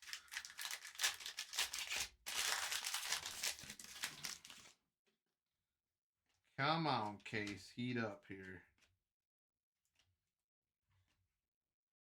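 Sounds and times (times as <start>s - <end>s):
wrapper crinkling and tearing: 0.0s - 4.8s.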